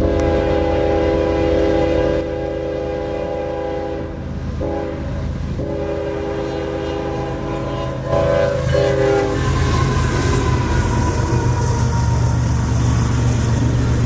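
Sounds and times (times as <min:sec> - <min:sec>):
locomotive air horn blasts: 0:00.0 - 0:12.7
low rumble of train: 0:00.0 - 0:14.0.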